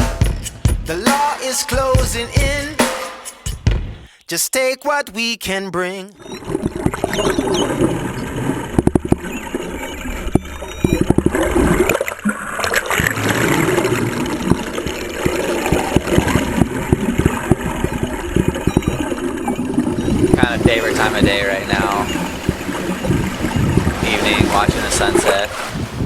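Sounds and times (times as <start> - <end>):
water rushing along boat hull: 6.2 - 26.0
short water splashes: 10.7 - 26.0.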